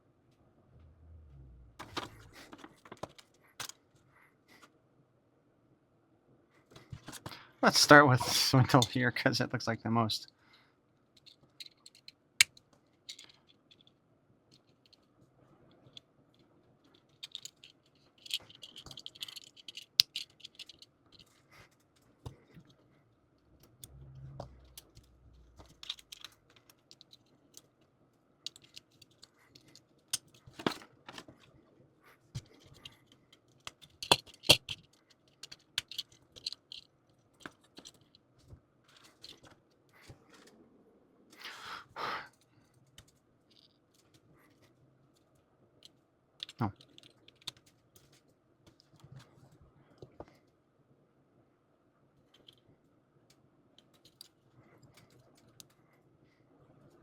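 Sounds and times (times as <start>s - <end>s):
plastic parts clicking and snapping: 11.2s - 13.9s, 16.9s - 21.4s, 23.6s - 27.8s, 28.5s - 31.5s, 32.4s - 38.2s, 46.4s - 49.2s.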